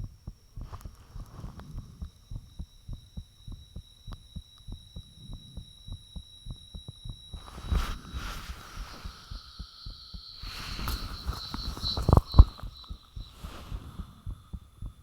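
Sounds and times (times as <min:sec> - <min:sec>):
heartbeat thumps: 0:00.0 - 0:15.0
thin high whine: 0:00.2 - 0:15.0
hiss: 0:07.4 - 0:14.9.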